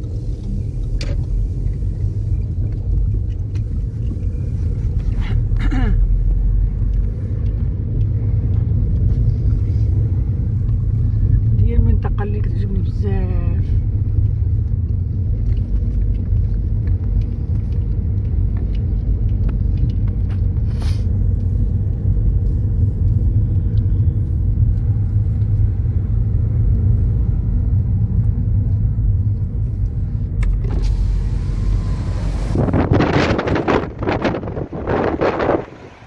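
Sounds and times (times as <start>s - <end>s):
car engine and road noise: 0.0s - 36.0s
loud rushing noise: 30.6s - 36.0s.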